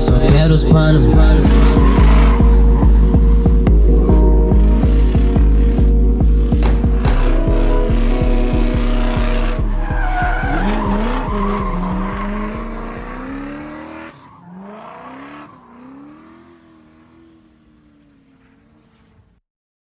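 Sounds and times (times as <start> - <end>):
bass drum pattern: 0.0 - 13.4.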